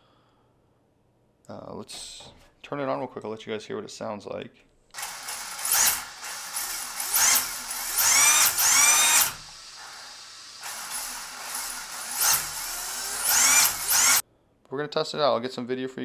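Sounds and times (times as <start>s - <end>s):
electric motor whine revving: 5.0s - 14.2s.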